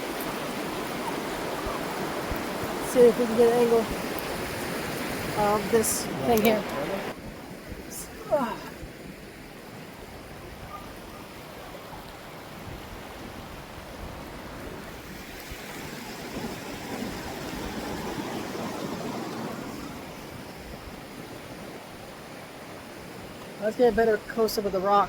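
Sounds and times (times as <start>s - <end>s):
water rushing over waterfall: 0.0s - 7.2s, 7.9s - 10.6s.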